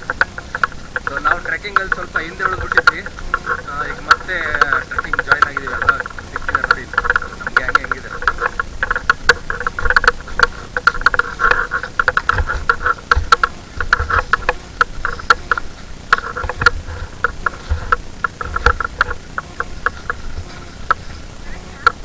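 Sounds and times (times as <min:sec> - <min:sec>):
footsteps on forest trail: 0:00.0 - 0:22.0
stuttering animal call chorus: 0:00.0 - 0:22.0.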